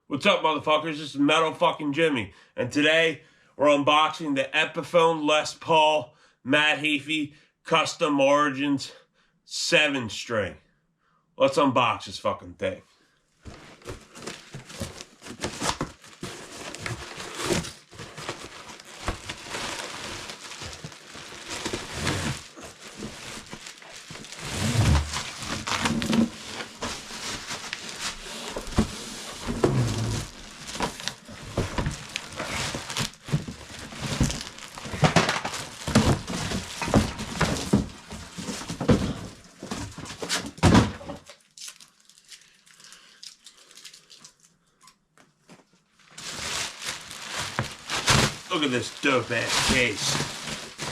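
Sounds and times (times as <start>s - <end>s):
packaging being torn and handled: 13.5s - 38.6s, 41.3s - 44.6s, 46.1s - 50.9s.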